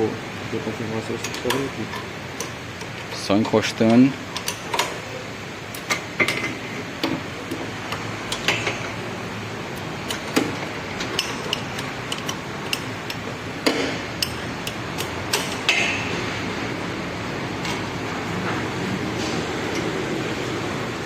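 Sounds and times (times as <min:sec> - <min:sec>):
workshop background noise: 0:00.0 - 0:21.0
hand tools clicking on metal: 0:01.2 - 0:04.9, 0:10.0 - 0:15.8.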